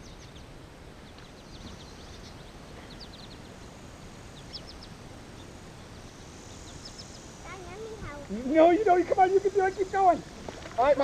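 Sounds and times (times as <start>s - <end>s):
bird chirps: 0.0s - 3.7s, 4.3s - 8.0s
low steady rumbling noise: 0.0s - 11.0s.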